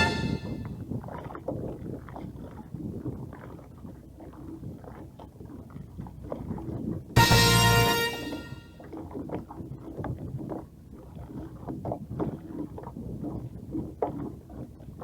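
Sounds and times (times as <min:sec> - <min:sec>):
wind on microphone: 0:00.0 - 0:02.0
rumble of water and boat: 0:00.0 - 0:15.0.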